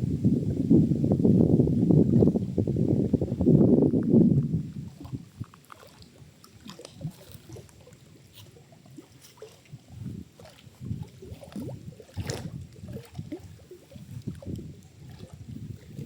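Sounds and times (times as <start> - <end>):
water sloshing and gurgling: 0.0 - 16.0
small splashes and drips: 4.8 - 16.0.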